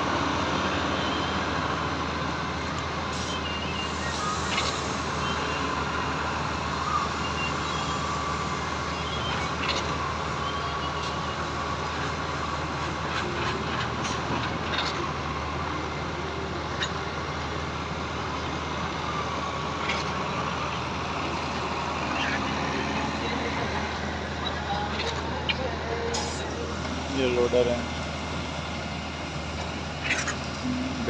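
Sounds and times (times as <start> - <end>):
heavy diesel machinery running: 0.0 - 31.0.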